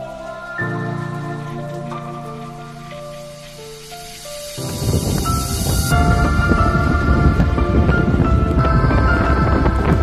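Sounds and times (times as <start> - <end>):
hissing swell: 0.0 - 10.0
sustained music notes: 0.0 - 10.0
dense low rumble: 4.6 - 10.0.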